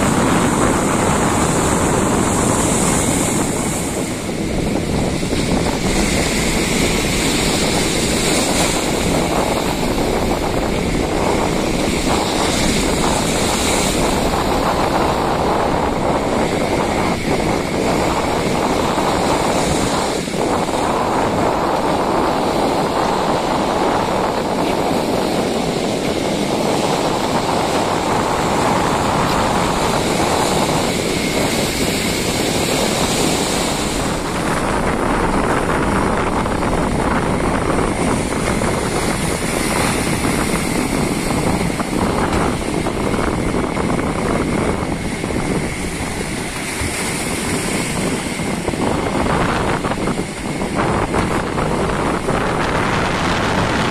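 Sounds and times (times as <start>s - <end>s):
heavy sea surf: 0.0s - 53.9s
wind buffeting microphone: 0.0s - 53.9s.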